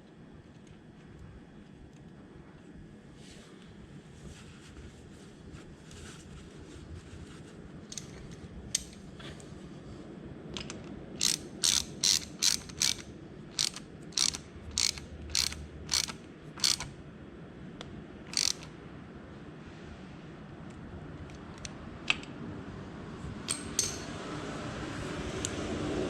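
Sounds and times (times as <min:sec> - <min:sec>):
ratchet wrench clicking: 0:10.6 - 0:16.9, 0:18.3 - 0:18.7, 0:23.5 - 0:24.1.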